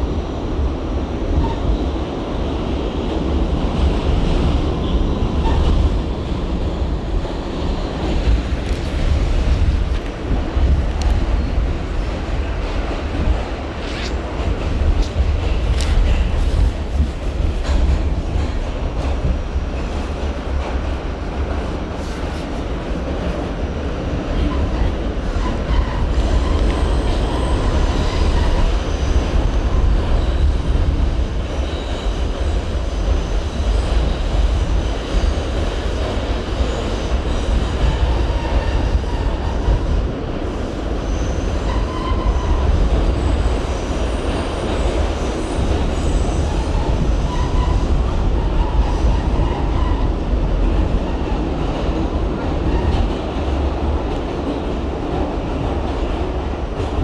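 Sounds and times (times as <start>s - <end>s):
subway train rumbling: 0.0s - 57.0s.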